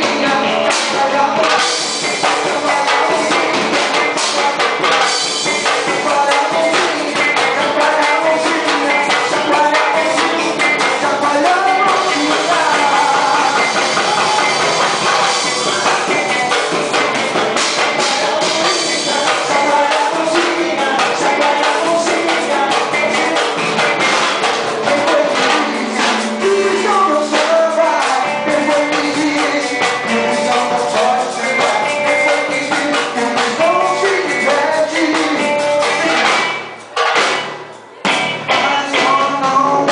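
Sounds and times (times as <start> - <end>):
person singing: 0.0 - 37.2, 37.8 - 39.9
band playing gospel song: 0.0 - 39.9.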